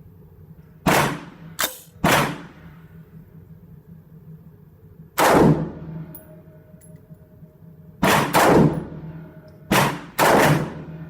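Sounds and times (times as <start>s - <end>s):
sharp rifle crack: 0.8s - 2.6s, 5.2s - 5.7s, 8.0s - 8.9s, 9.7s - 10.9s
rifle shots with ringing tail: 0.8s - 2.7s, 5.2s - 6.1s, 8.0s - 11.0s.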